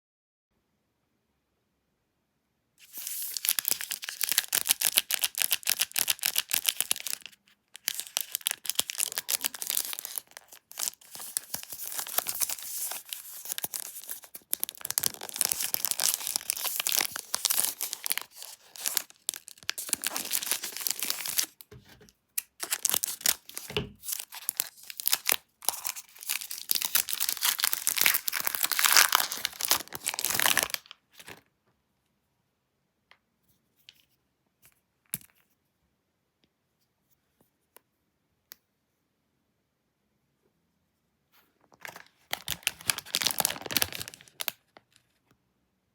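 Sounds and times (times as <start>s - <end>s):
wrapper tearing and crinkling: 2.8s - 21.6s, 22.4s - 31.4s, 41.8s - 44.6s.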